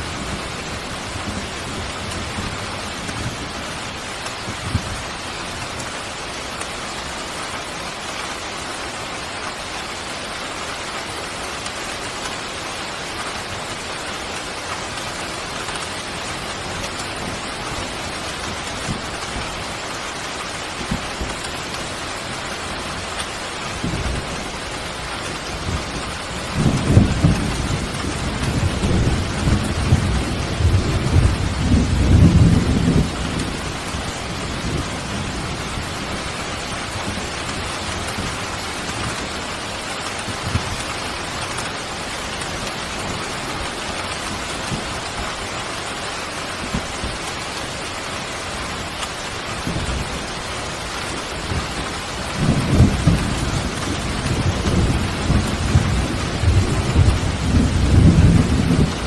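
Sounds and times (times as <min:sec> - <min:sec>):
steady rain falling: 0:00.0 - 0:59.0
thunder rolling: 0:51.4 - 0:59.0.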